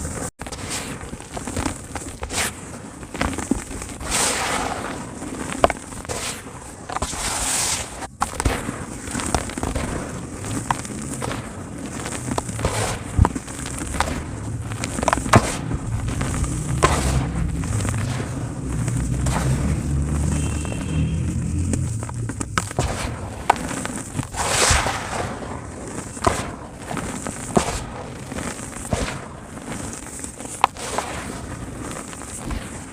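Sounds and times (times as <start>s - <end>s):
dry cement crunching: 0.0s - 32.9s.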